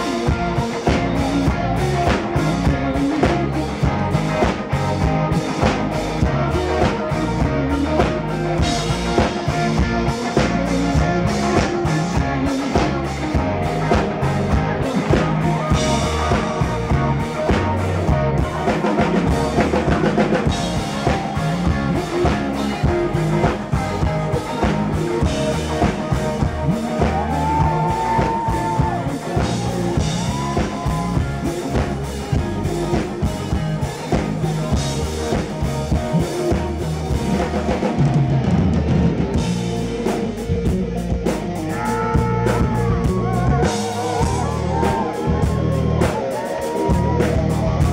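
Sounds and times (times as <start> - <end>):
live rock band playing: 0.0 - 47.9.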